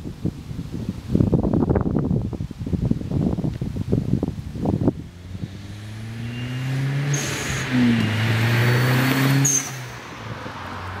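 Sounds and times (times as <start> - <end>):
car exhaust revving and idling: 4.5 - 11.0.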